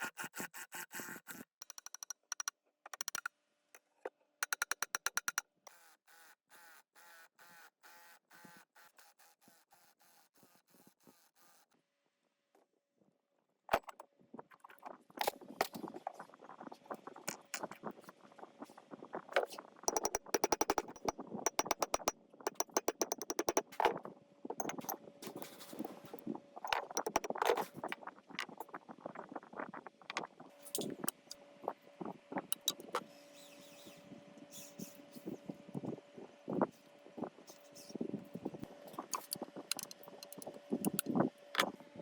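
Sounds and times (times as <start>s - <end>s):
rapid even clicking: 19.9s - 24.0s, 26.7s - 27.6s
clicks and knocks on metal: 19.9s - 25.0s, 26.6s - 27.6s.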